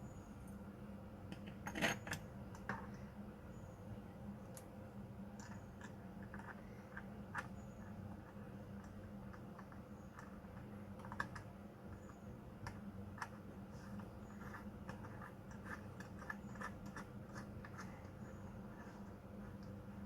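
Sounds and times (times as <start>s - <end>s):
low steady hum: 0.0s - 20.0s
small objects clicking and scratching: 5.4s - 19.8s.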